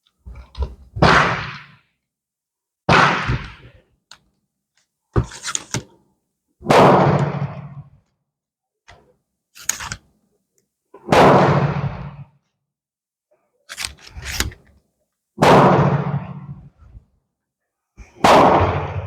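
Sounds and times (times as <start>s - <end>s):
loud gunshots: 1.0s - 1.7s, 2.9s - 3.7s, 6.6s - 7.6s, 11.1s - 12.0s, 15.4s - 16.3s, 18.2s - 19.0s.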